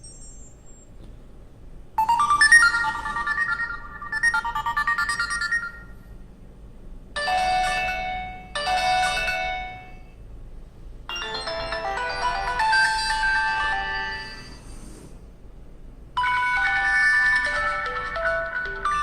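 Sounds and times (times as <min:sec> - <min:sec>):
phone ringtone melody: 0:02.0 - 0:06.1, 0:07.2 - 0:10.2, 0:11.1 - 0:14.9, 0:16.2 - 0:19.0.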